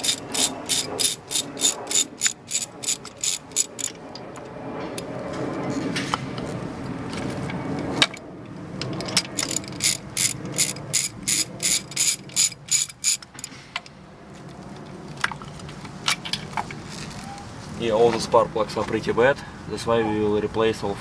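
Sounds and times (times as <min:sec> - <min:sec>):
socket ratchet clicking: 0:00.0 - 0:04.0, 0:08.8 - 0:13.6.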